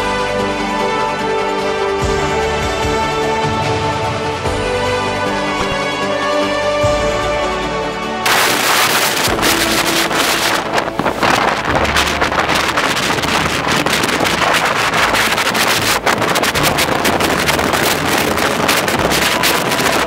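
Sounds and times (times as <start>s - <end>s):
strong wind buffeting microphone: 8.2s - 20.0s.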